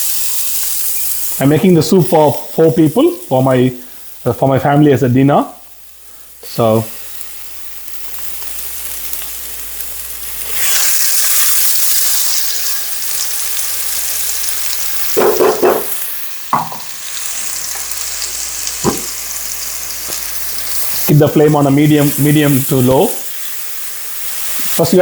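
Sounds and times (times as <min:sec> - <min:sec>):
spice paste sizzling in a pan: 0:00.0 - 0:25.0
stirring knocks and scrapes: 0:15.2 - 0:16.0.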